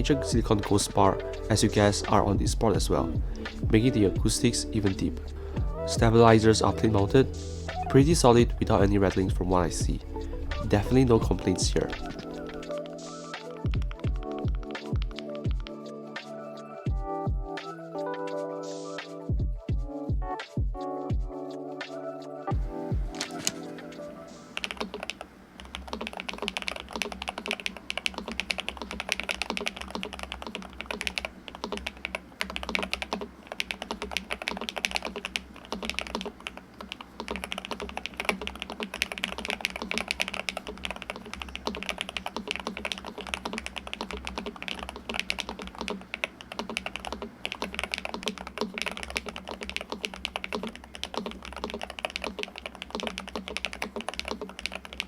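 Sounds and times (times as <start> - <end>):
fast keyboard typing: 10.6 - 15.8, 23.1 - 23.8, 24.6 - 55.0.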